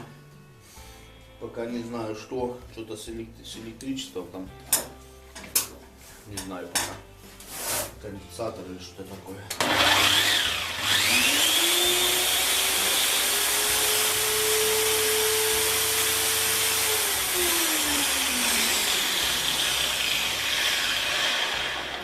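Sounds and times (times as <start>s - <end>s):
angle grinder whining: 9.6s - 22.0s.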